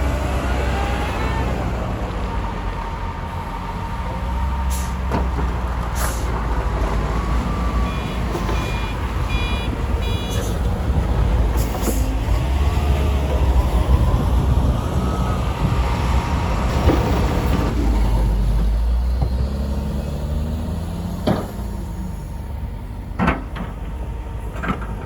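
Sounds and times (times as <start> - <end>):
diesel engine rumble: 0.0 - 25.0
reversing alarm beeps: 7.6 - 10.6.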